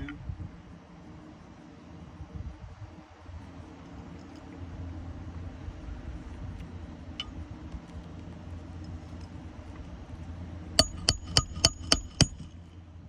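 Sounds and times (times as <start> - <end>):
hammer blows on nail: 10.8 - 12.6.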